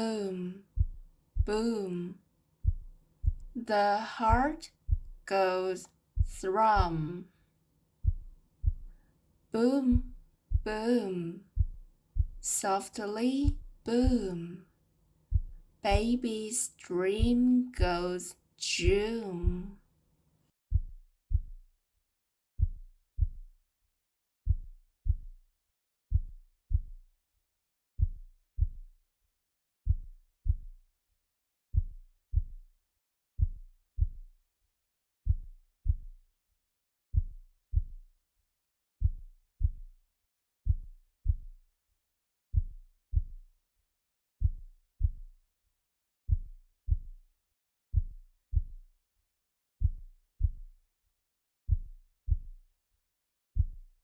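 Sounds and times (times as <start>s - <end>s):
slow heartbeat thumps: 0.0s - 7.2s, 8.0s - 9.0s, 9.6s - 14.6s, 15.3s - 19.8s, 24.5s - 25.3s, 31.8s - 32.6s, 37.2s - 38.0s, 39.0s - 39.8s, 40.7s - 41.5s, 42.6s - 43.4s, 44.4s - 45.3s, 48.0s - 48.8s, 49.8s - 50.7s, 51.7s - 52.6s, 53.6s - 53.9s.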